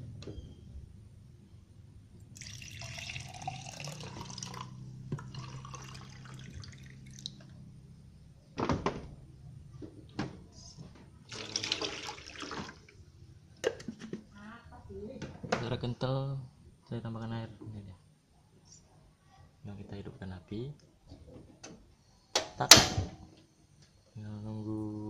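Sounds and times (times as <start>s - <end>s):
low steady hum: 0.0s - 25.0s
liquid pouring into a pot: 2.4s - 7.4s, 11.3s - 12.9s.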